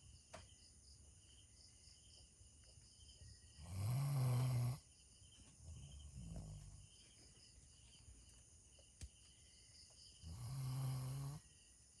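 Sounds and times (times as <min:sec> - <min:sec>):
dog snoring: 0:03.6 - 0:04.8, 0:10.2 - 0:11.4.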